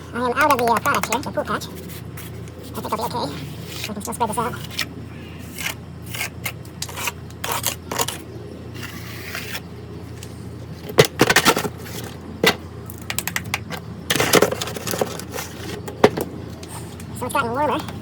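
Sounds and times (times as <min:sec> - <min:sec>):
tool scraping rough pool surface: 0:05.4 - 0:08.2, 0:08.8 - 0:09.6.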